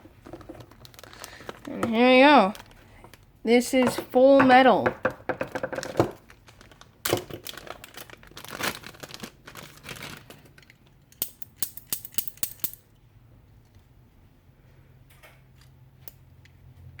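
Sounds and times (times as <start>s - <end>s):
plastic packaging crinkling: 0.0s - 3.3s, 5.4s - 11.2s.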